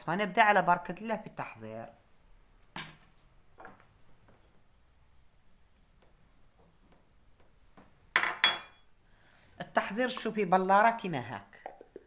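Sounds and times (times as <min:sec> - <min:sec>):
glass jar knocking down: 0:08.2 - 0:08.8.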